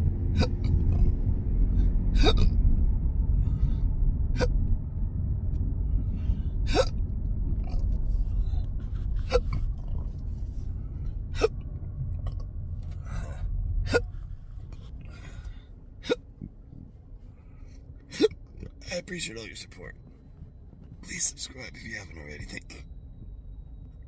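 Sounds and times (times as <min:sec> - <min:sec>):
low rumble: 0:00.0 - 0:24.0
man hiccuping: 0:00.4 - 0:00.8, 0:02.2 - 0:02.5, 0:06.7 - 0:07.0, 0:09.3 - 0:09.6
soft breaths: 0:12.8 - 0:18.3.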